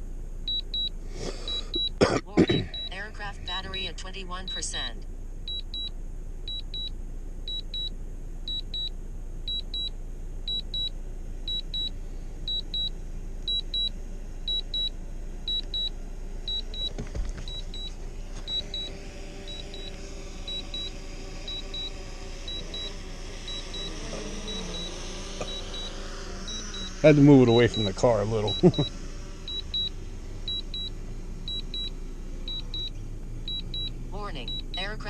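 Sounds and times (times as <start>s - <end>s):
drone propeller hum: 0.0s - 35.0s
remote controller beeping: 15.5s - 15.9s, 16.5s - 18.9s, 19.5s - 19.9s, 20.5s - 28.9s, 29.5s - 31.9s, 32.5s - 35.0s.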